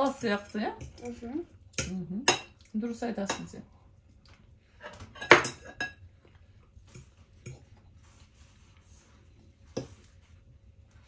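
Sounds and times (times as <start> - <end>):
cutlery and dishes clinking: 4.8 - 6.0, 6.8 - 7.8.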